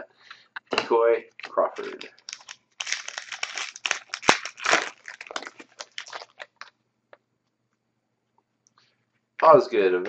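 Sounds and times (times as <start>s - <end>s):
plastic wrapper tearing and crinkling: 1.4s - 6.7s.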